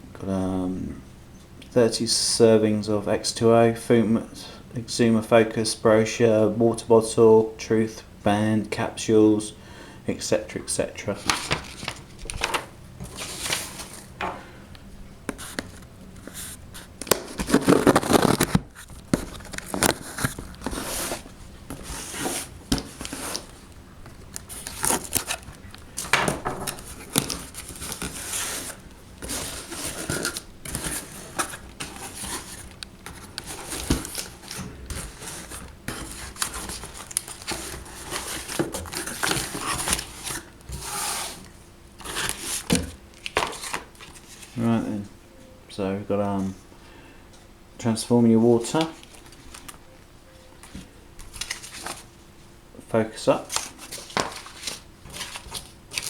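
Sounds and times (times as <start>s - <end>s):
wrapping crinkling and tearing: 11.2s - 14.1s, 15.4s - 40.9s, 50.6s - 52.1s, 53.4s - 56.0s
items knocking and clattering: 14.2s - 14.5s, 26.0s - 28.1s.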